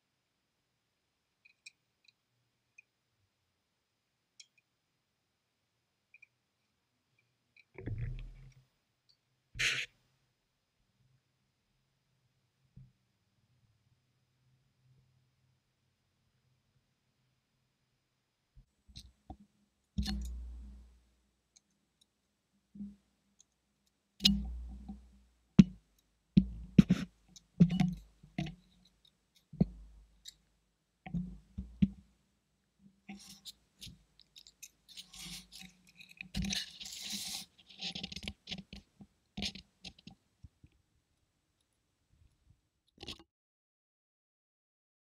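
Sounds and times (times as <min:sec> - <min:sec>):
scratchy hissing: 0:09.6 - 0:09.9, 0:36.4 - 0:37.8.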